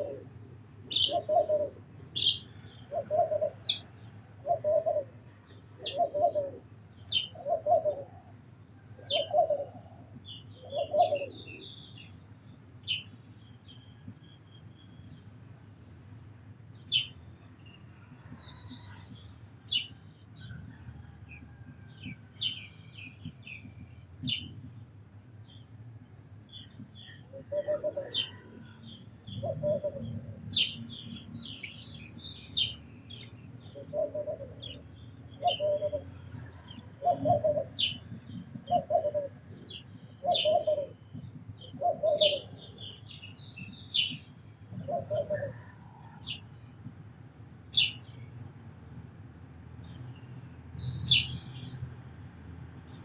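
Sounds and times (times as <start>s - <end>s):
dove cooing: 0.0s - 8.4s, 9.0s - 11.7s, 27.0s - 31.0s, 33.6s - 43.0s, 44.0s - 46.3s
sparrows chirping: 0.0s - 53.0s.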